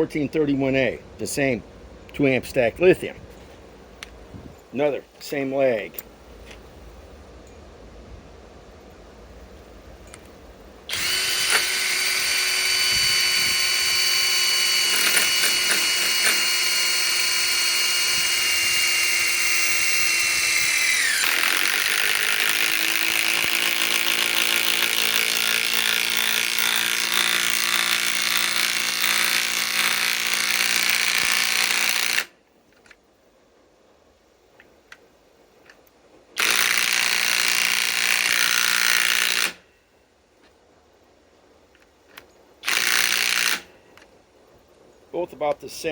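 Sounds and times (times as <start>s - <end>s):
impact wrench driving screw: 10.9s - 32.3s, 36.4s - 39.6s, 42.6s - 43.6s.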